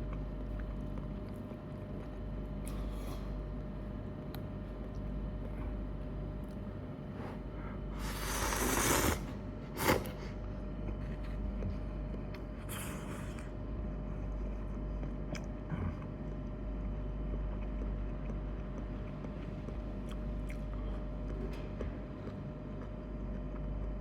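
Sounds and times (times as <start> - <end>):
person chewing: 0.0 - 7.4, 8.0 - 10.3, 17.3 - 21.4
low machine hum: 0.0 - 24.0.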